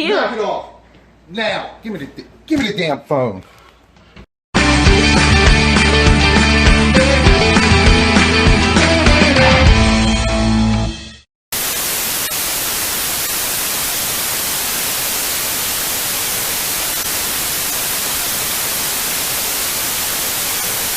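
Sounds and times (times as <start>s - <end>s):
music: 4.6s - 11.2s
static hiss: 11.5s - 20.9s.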